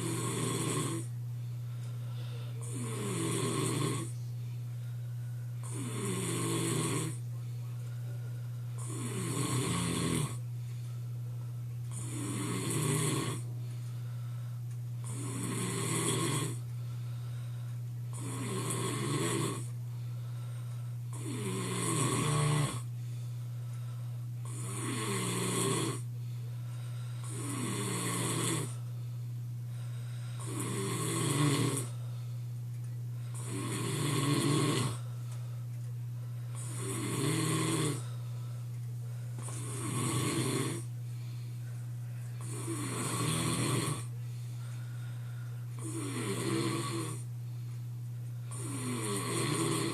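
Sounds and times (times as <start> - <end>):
man snoring: 0.0 - 1.2, 2.6 - 4.2, 5.6 - 7.2, 8.8 - 10.4, 11.9 - 13.5, 15.0 - 16.6, 18.1 - 19.7, 21.1 - 22.9, 24.4 - 26.1, 27.2 - 28.9, 29.8 - 32.0, 33.3 - 35.1, 36.5 - 38.2, 39.4 - 40.9, 42.4 - 44.2, 45.8 - 47.3, 48.5 - 49.9.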